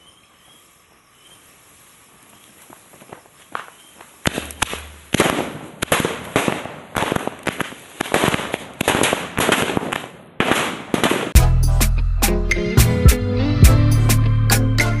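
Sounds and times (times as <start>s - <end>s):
firecrackers banging and crackling: 2.6s - 11.4s.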